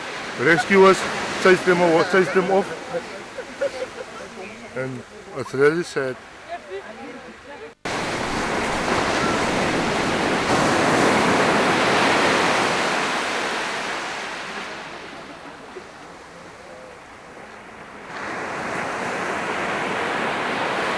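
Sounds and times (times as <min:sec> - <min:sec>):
surf washing onto beach: 0:00.0 - 0:20.9
wind: 0:00.0 - 0:20.9.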